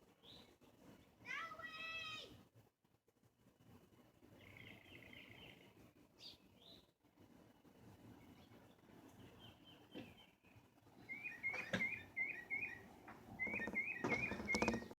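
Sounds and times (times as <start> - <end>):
bird chirping: 0.1 - 1.1, 4.3 - 7.0, 8.1 - 15.0.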